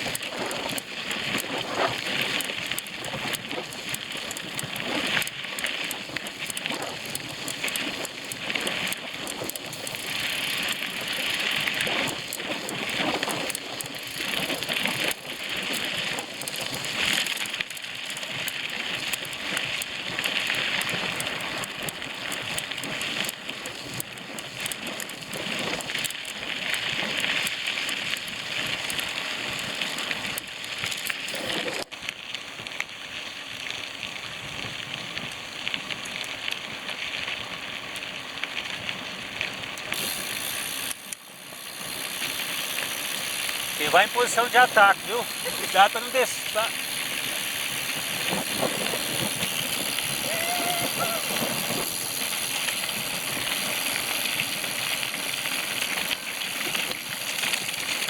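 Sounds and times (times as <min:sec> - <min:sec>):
bicycle tyres on dirt trail: 0:00.0 - 0:58.0.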